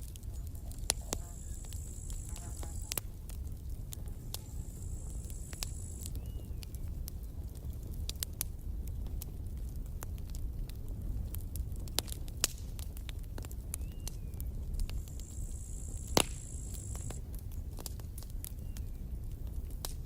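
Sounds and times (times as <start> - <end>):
campfire crackling and popping: 0.0 - 20.0
thin high hiss: 0.4 - 3.0, 4.3 - 6.1, 15.0 - 17.2.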